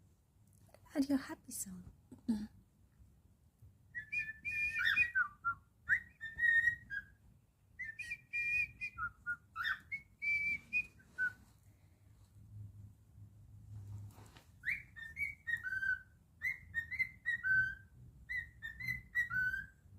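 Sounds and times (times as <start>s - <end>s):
cockatiel whistling a tune: 3.9s - 7.2s, 7.8s - 11.5s, 14.6s - 19.9s.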